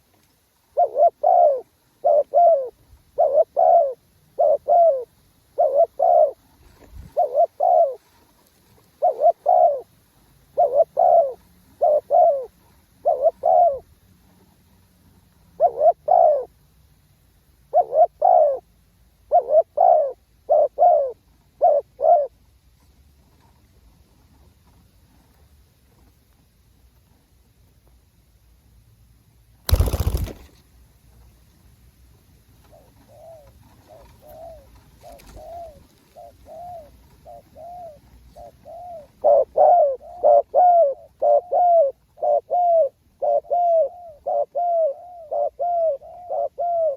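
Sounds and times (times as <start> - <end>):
dove cooing: 0.7 - 8.0, 9.0 - 13.9, 15.5 - 16.5, 17.7 - 22.4, 32.7 - 46.9.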